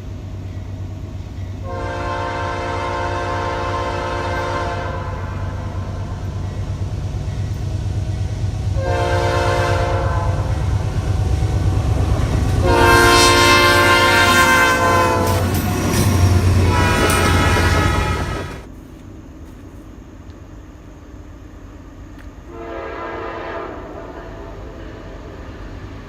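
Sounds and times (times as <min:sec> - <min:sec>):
moving train rumble: 0:00.0 - 0:26.0
locomotive air horn blasts: 0:01.6 - 0:05.8, 0:08.8 - 0:10.7, 0:12.4 - 0:18.7, 0:22.5 - 0:25.2.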